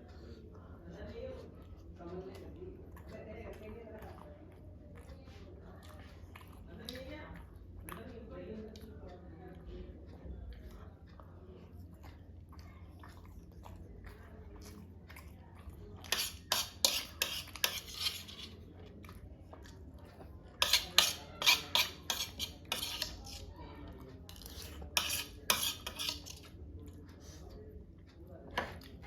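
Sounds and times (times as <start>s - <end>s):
utensil clatter against plate: 16.0s - 18.6s, 20.6s - 23.4s, 24.3s - 26.6s.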